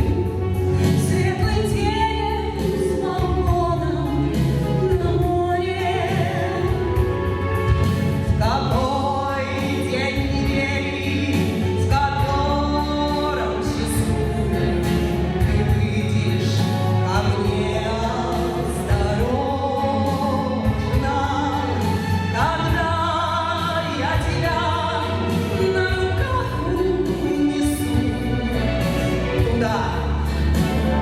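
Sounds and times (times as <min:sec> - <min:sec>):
instrumental accompaniment: 0:00.0 - 0:31.0
woman singing slow song: 0:00.0 - 0:31.0.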